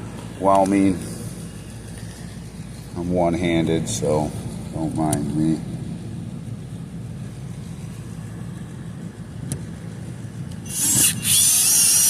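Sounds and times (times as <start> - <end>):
low steady hum: 0.0 - 12.0
cordless screwdriver motor whirring: 10.6 - 12.0.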